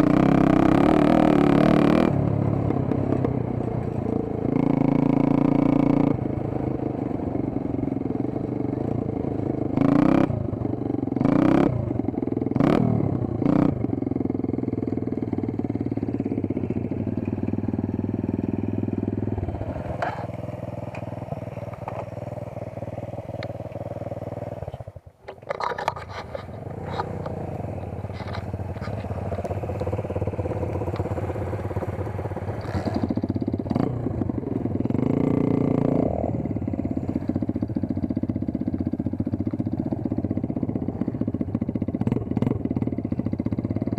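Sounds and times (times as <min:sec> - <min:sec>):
dirt bike engine running: 0:00.0 - 0:43.9
engine throttle blips: 0:15.2 - 0:43.9.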